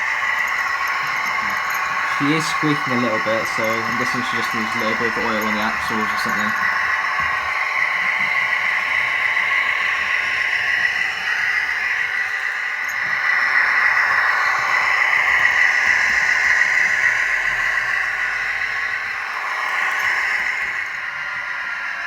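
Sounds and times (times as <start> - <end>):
model train motor and wheels: 0.0 - 22.0
diesel engine sound from small speaker: 1.4 - 6.8.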